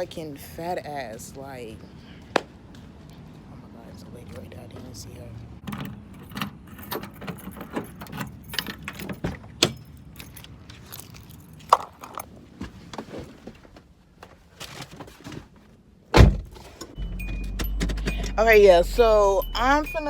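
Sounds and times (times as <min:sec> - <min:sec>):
clicks and rattles inside car: 0:05.6 - 0:11.0, 0:11.7 - 0:18.8
low road hum: 0:16.2 - 0:20.0.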